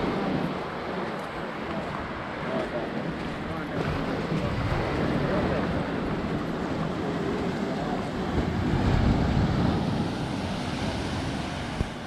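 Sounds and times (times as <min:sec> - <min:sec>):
surf rushing: 0:00.0 - 0:12.0
wind on microphone: 0:03.1 - 0:12.0.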